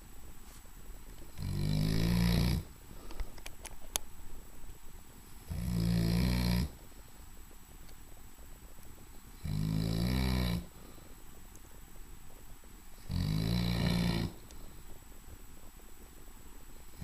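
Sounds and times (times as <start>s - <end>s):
dog snoring: 1.3s - 2.7s, 5.5s - 6.8s, 9.4s - 10.8s, 13.0s - 14.5s.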